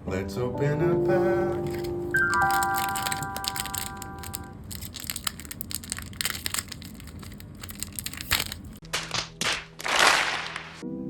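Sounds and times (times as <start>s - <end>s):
plastic wrapper crinkling: 1.5s - 8.8s.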